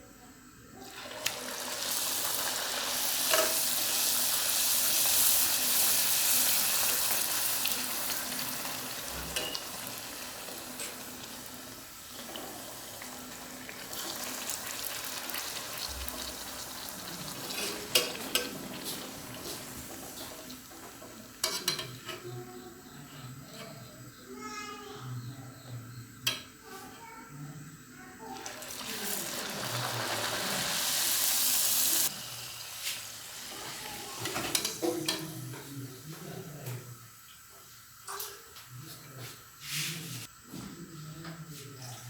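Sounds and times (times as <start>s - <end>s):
food deep-frying in hot oil: 0.8s - 22.0s, 28.4s - 36.0s.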